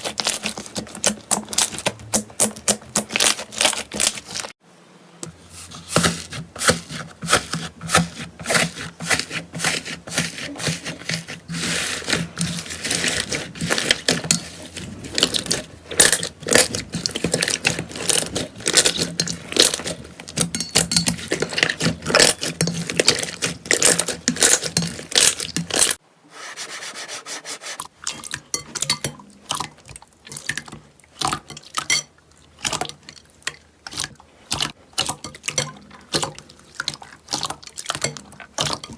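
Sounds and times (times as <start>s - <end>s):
slime squeezed crackling and popping: 0.1s - 4.5s.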